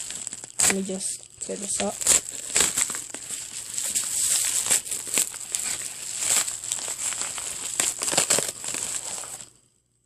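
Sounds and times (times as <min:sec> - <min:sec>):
plastic packaging tearing: 0:00.0 - 0:09.5
plastic crinkling: 0:00.0 - 0:09.6.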